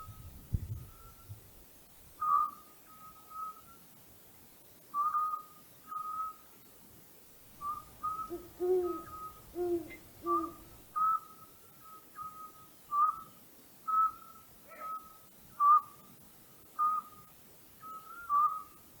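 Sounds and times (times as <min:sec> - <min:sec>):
owl whistled calls: 0:02.2 - 0:03.8, 0:04.9 - 0:06.4, 0:07.6 - 0:13.3, 0:13.9 - 0:16.0, 0:16.8 - 0:17.2, 0:17.8 - 0:18.8.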